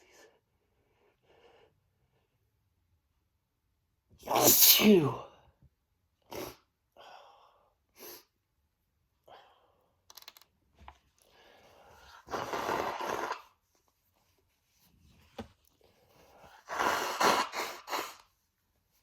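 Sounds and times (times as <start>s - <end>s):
man sneezing: 4.3s - 5.3s.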